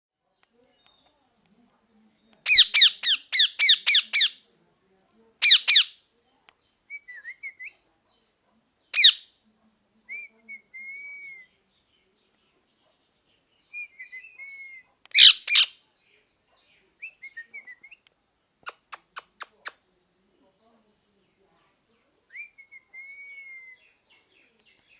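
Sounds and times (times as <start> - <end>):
parrot squawking: 2.5 - 4.4, 5.4 - 6.0, 9.0 - 9.2, 15.1 - 15.7.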